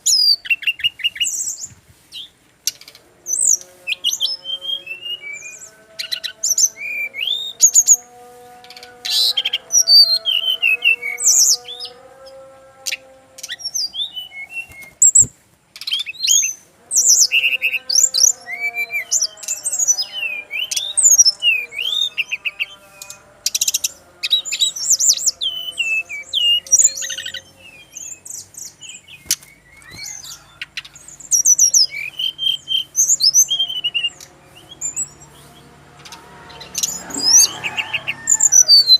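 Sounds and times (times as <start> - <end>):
bird singing high chirps and whistles: 13.4 - 35.6.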